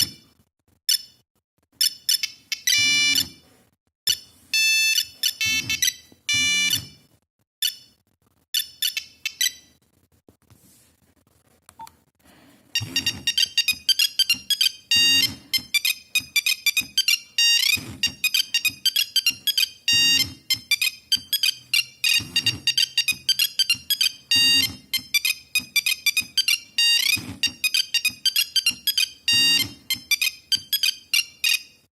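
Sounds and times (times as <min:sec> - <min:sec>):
monophonic phone ringtone beeps: 0:01.8 - 0:03.3, 0:04.1 - 0:07.0, 0:12.8 - 0:31.8.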